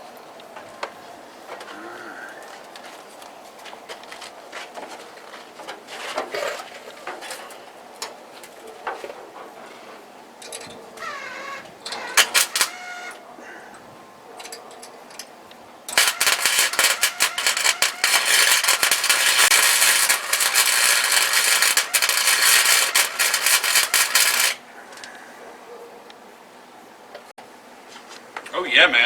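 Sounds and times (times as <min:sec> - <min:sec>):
welding arc crackling: 0:11.0 - 0:13.2, 0:15.9 - 0:24.6.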